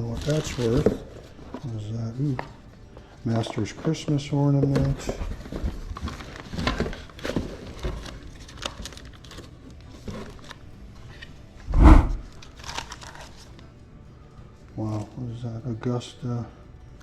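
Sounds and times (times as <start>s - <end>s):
wrapping crinkling and rustling: 0.0s - 11.4s, 12.4s - 13.7s.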